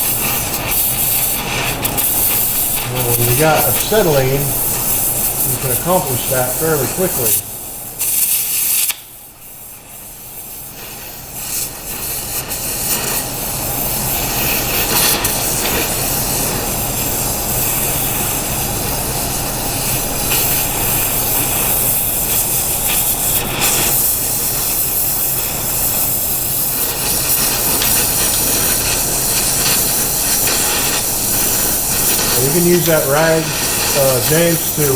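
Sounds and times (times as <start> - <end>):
torch flame hissing: 0.0 - 34.9.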